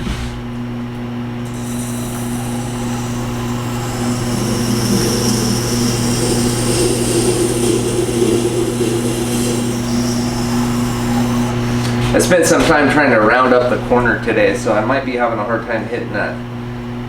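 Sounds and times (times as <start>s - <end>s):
grinding wheel motor hum: 1.0s - 14.0s.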